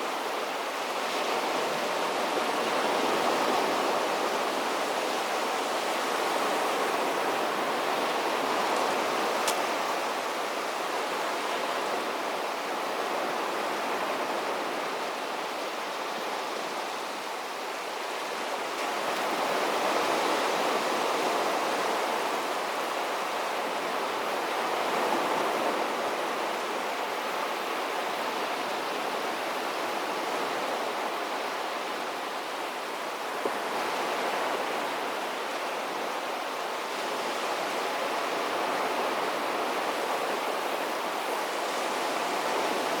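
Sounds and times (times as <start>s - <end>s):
waves breaking on a beach: 0.0s - 43.0s.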